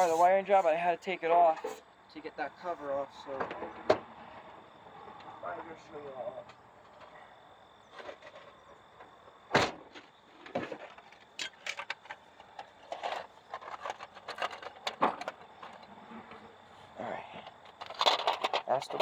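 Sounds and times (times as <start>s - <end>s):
metal engine parts and tools clinking: 10.3s - 16.0s, 17.4s - 19.0s.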